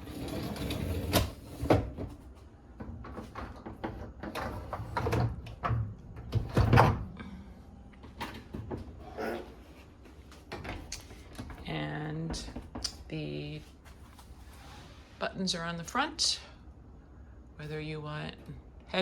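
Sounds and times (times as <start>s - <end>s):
dishwasher racks clattering: 2.9s - 7.2s.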